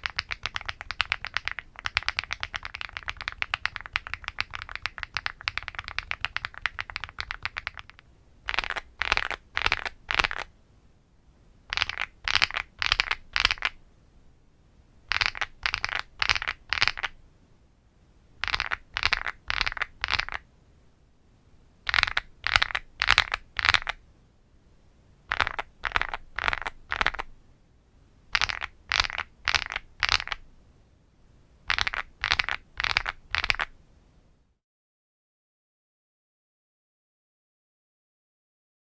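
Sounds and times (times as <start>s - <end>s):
mechanical keyboard typing: 0.0s - 10.4s, 11.7s - 13.7s, 18.4s - 20.4s, 21.9s - 24.0s.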